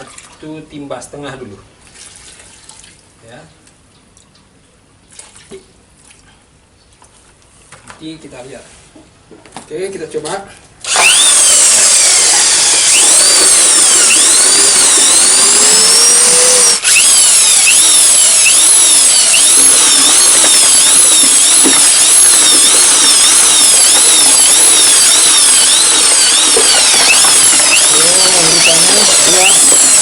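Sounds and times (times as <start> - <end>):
electric mixer drill whining: 10.8 - 30.0.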